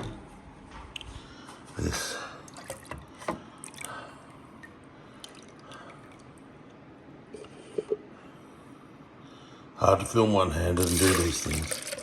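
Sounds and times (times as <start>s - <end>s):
liquid dripping: 2.4s - 6.5s, 10.8s - 12.0s.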